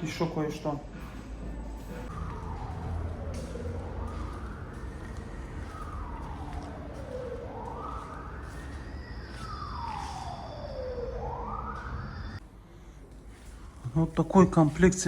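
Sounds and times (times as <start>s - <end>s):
steady low rumble: 0.8s - 10.0s
emergency vehicle siren wailing: 1.7s - 12.4s.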